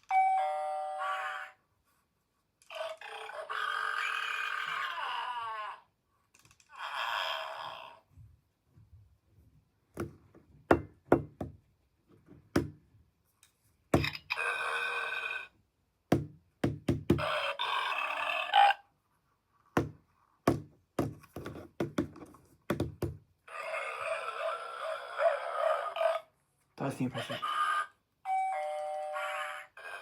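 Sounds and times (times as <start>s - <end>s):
toy speaker sound clip: 0.4s - 1.6s, 27.1s - 30.0s
plastic knocks and taps: 9.9s - 12.8s, 16.1s - 17.2s, 19.8s - 23.2s.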